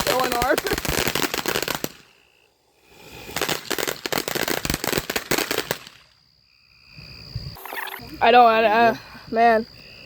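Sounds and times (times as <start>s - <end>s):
firework crackling: 0.0s - 2.3s, 2.9s - 6.2s.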